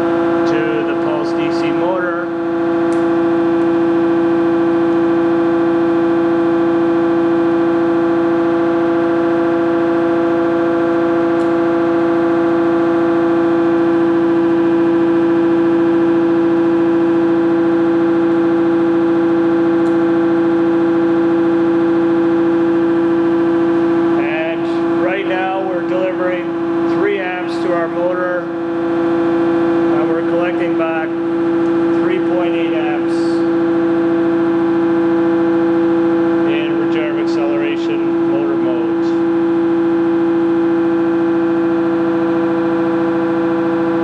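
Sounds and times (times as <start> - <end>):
stepper motor buzzing whine: 0.0 - 44.0.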